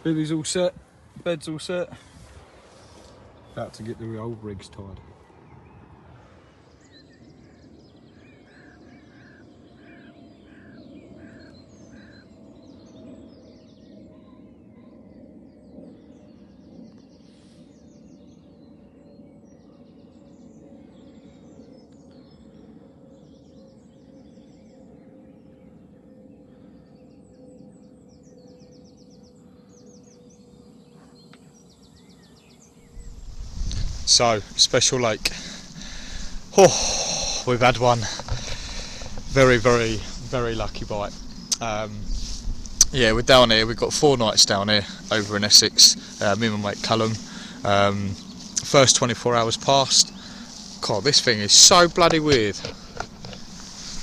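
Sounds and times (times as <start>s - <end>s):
birds singing and chirping: 0.0s - 54.0s
low constant background hiss: 31.4s - 52.8s
faint hum dropping in pitch: 32.8s - 54.0s.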